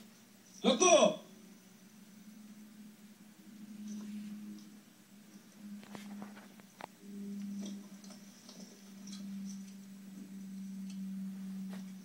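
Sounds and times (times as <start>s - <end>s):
steady low hum: 0.0s - 12.0s
faint clicks and ticks: 3.8s - 11.1s.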